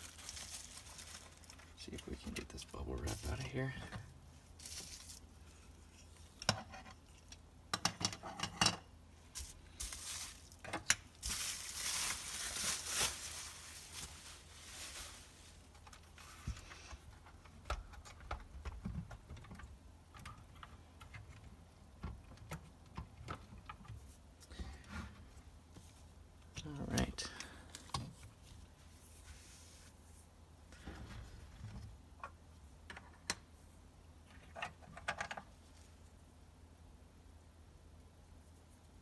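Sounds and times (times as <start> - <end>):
bubble wrap rustling: 0.0 - 3.7, 4.4 - 6.4, 9.3 - 16.7.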